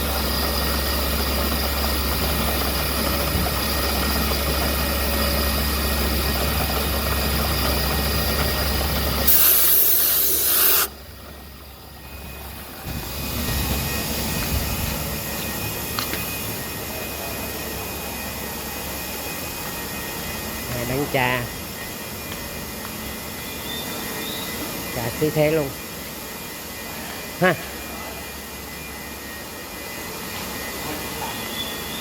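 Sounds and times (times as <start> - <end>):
machine humming with high tones: 0.0 - 32.0
loud hiss: 9.3 - 10.9.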